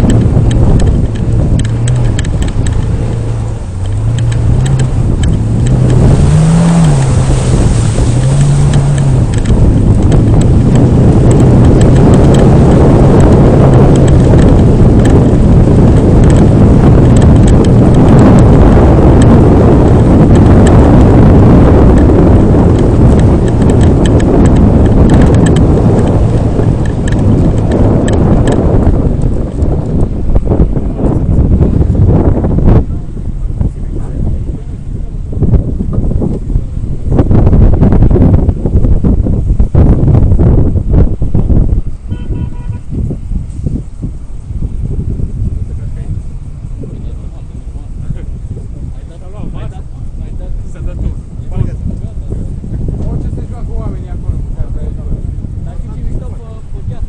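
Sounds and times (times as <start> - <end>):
off-road vehicle engine revving: 0.0 - 57.0.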